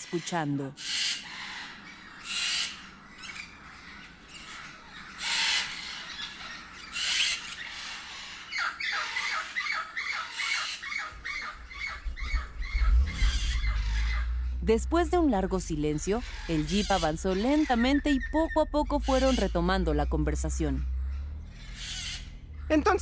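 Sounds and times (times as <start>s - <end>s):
birds squawking and calling: 0.0s - 23.0s
low rumble: 11.5s - 23.0s.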